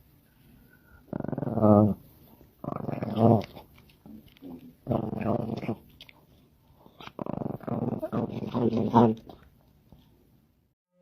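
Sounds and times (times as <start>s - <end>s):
dog growling: 1.1s - 2.0s, 2.6s - 5.9s, 7.0s - 9.4s.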